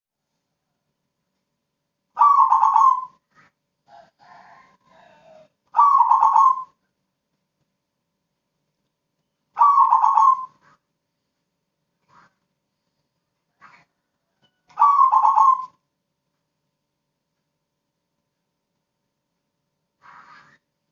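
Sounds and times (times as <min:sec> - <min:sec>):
dove cooing: 0:02.2 - 0:03.2, 0:04.0 - 0:06.8, 0:09.6 - 0:10.8, 0:14.7 - 0:15.8
soft low bird calls: 0:02.2 - 0:03.6, 0:04.9 - 0:06.9, 0:09.3 - 0:11.3, 0:12.0 - 0:15.9, 0:20.0 - 0:20.8.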